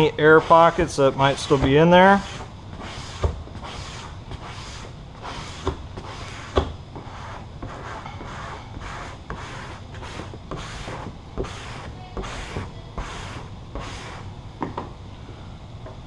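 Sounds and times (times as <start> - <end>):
squeegee swishing over vinyl: 0.0 - 14.3.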